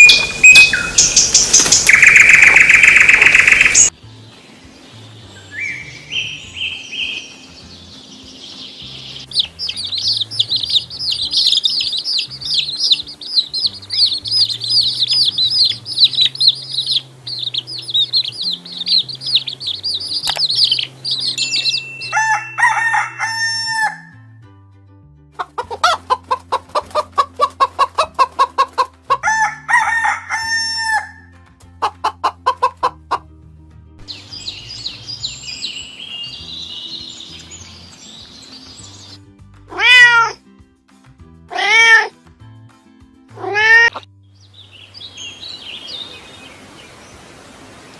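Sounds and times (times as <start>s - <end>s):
chicks chirping: 0.0s - 3.9s, 6.7s - 23.3s, 34.1s - 39.2s
chickens clucking: 9.2s - 21.4s, 25.4s - 30.2s, 31.8s - 33.3s.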